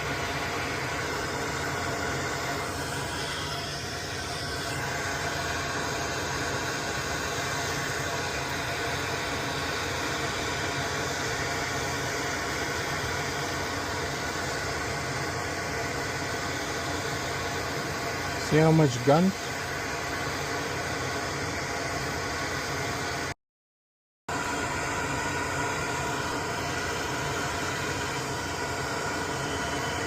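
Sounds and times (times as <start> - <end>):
fan air hiss: 0.0 - 23.4, 24.3 - 30.0.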